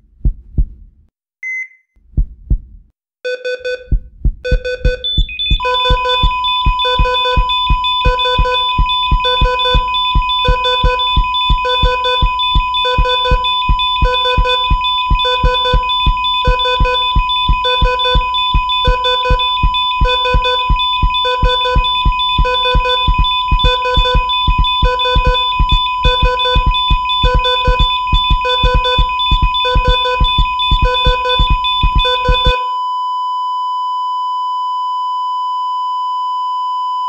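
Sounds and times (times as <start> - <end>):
low heartbeat thumps: 0.0 - 1.0, 2.0 - 2.9, 3.8 - 32.6
heart monitor beeps: 3.3 - 37.0
continuous high monitor tone: 4.5 - 32.7.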